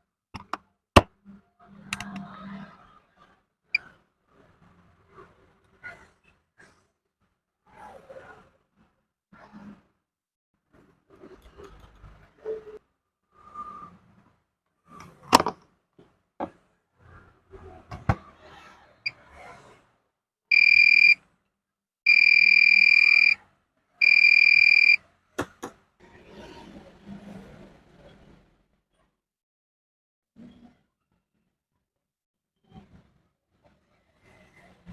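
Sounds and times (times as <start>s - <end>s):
multimeter continuity beeps: 20.5s - 21.2s, 22.1s - 23.4s, 24.0s - 25.0s
test probes clicking: 20.5s - 21.2s, 24.0s - 25.0s.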